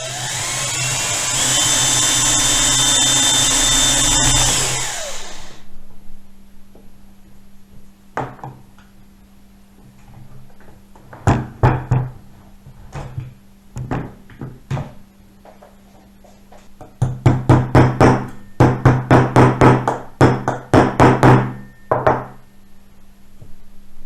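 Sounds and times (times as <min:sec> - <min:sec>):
steady low hum: 0:00.1 - 0:18.6.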